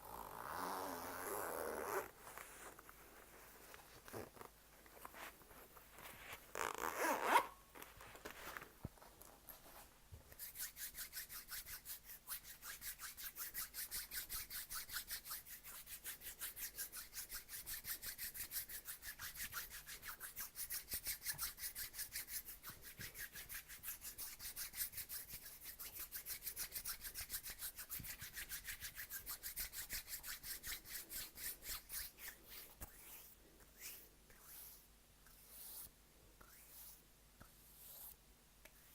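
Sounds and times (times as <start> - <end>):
scratching strokes on a surface: 9.6 - 38.9.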